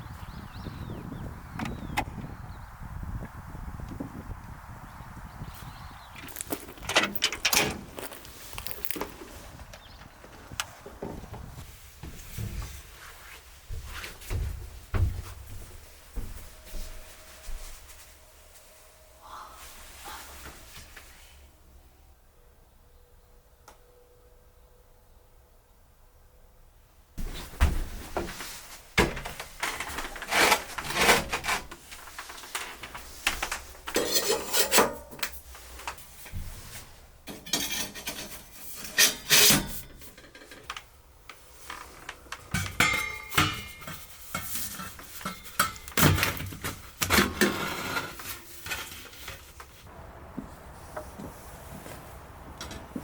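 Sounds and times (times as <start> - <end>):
hard objects clattering and scraping: 6.2 - 9.4.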